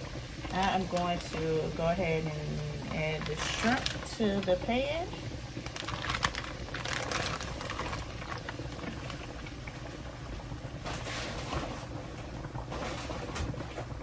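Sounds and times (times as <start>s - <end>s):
shrimp sizzling in butter: 2.9s - 9.6s.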